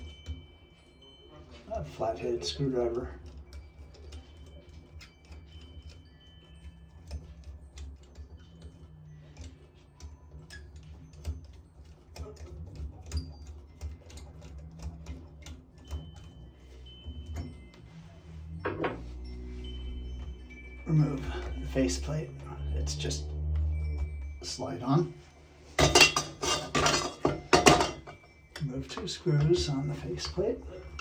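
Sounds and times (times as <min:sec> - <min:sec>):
low steady hum: 0:15.4 - 0:31.0.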